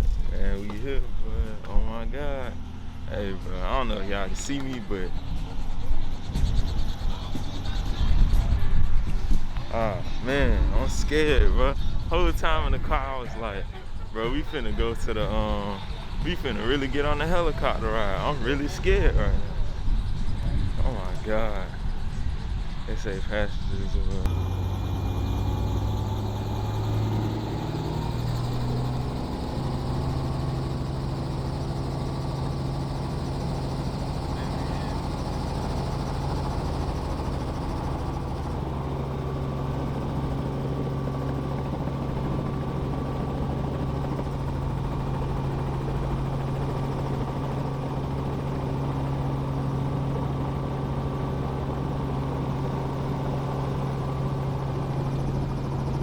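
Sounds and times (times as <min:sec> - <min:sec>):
helicopter hum: 0:00.0 - 0:56.0.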